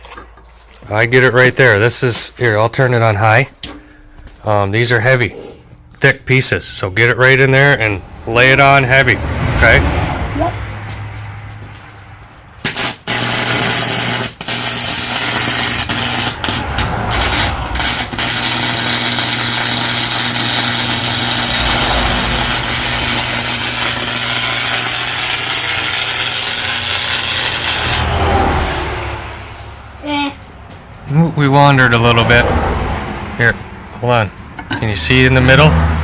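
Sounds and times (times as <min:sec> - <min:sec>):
arc welder crackling: 0:12.5 - 0:28.3.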